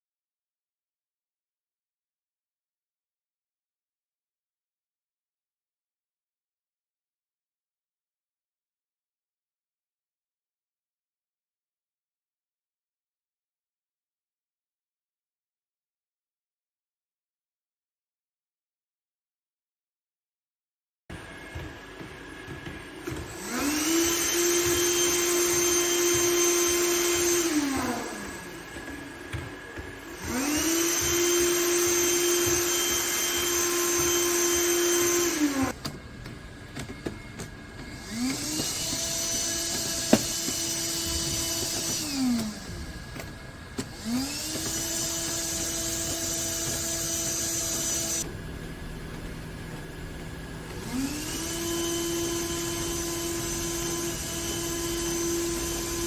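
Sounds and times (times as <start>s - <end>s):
vacuum motor whining: 21.1s - 56.0s.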